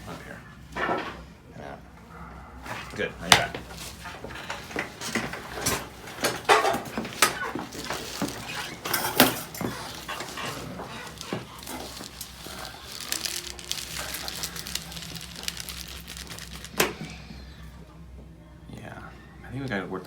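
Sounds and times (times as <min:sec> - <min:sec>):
spine cracking: 0:07.2 - 0:17.2.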